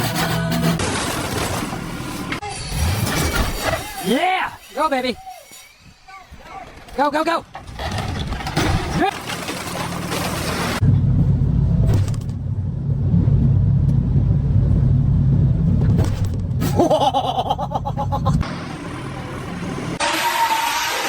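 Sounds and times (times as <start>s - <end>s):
vehicle engine rumbling: 5.8s - 20.0s.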